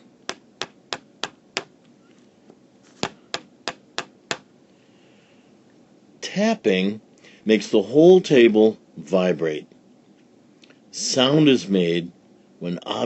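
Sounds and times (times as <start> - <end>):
pencil tapping on a table: 0.3 - 1.8, 3.0 - 4.5.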